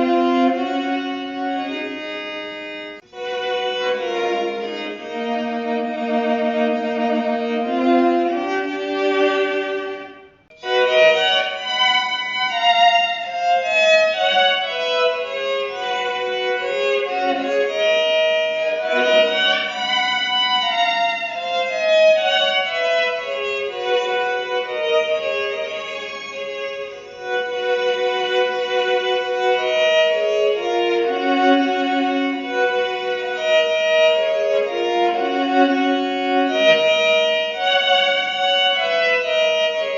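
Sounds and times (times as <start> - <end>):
electric violin with harmony effect: 0.0 - 39.9.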